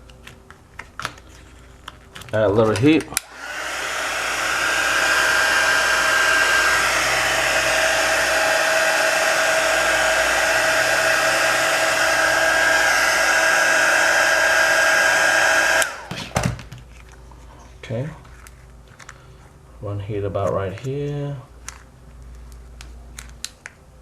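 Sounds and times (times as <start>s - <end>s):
hot-air blower whining: 3.2s - 16.6s.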